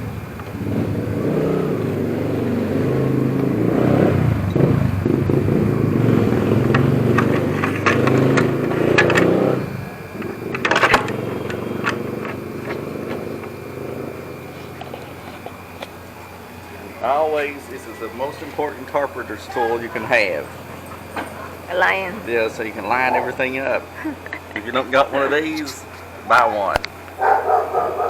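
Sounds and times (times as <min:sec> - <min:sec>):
track saw cutting wood: 0:00.4 - 0:15.5.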